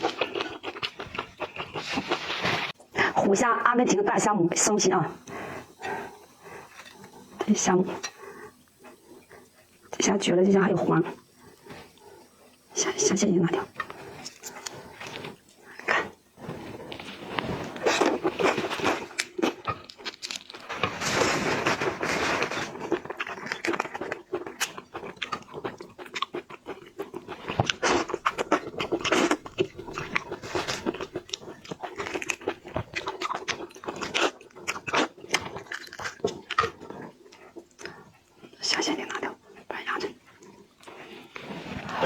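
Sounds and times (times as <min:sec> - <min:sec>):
shrimp crunching being chewed: 0:00.0 - 0:02.8, 0:06.6 - 0:09.8, 0:13.7 - 0:41.4.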